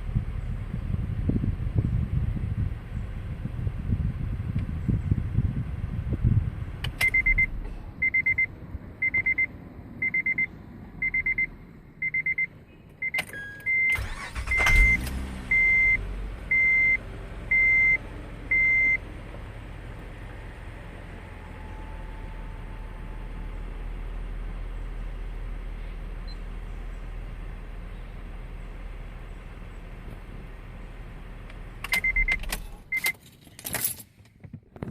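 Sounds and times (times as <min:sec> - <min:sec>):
car engine idling: 0:00.0 - 0:33.0
dashboard warning chime: 0:07.0 - 0:19.0, 0:32.0 - 0:33.2
engine starter cranking: 0:13.2 - 0:15.9.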